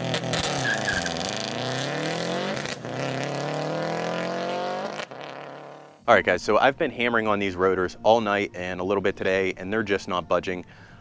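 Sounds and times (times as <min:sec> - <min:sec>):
car engine accelerating hard: 0:00.0 - 0:06.0.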